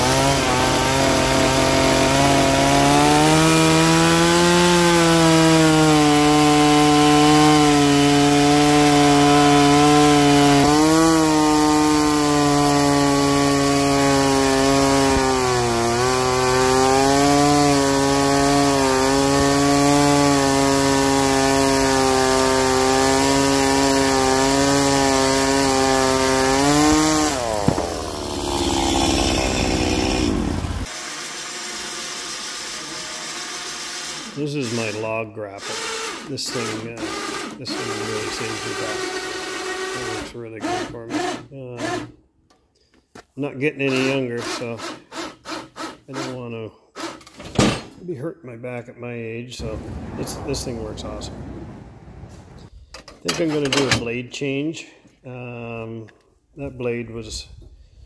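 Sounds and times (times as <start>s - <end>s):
sawmill engine running: 0.0s - 35.0s, 35.6s - 42.0s, 49.6s - 52.7s
saw blade cutting log: 0.0s - 42.2s, 43.8s - 47.4s, 49.6s - 51.2s.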